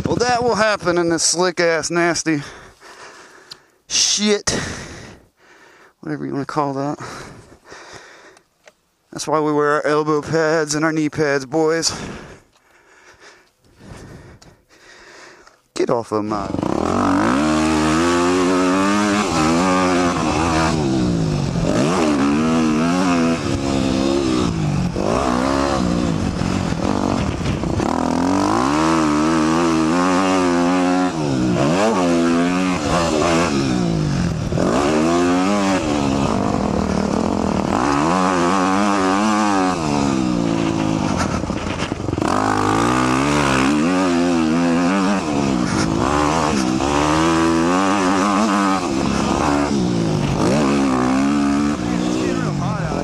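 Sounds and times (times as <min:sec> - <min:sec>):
dirt bike engine revving: 0:16.2 - 0:53.0.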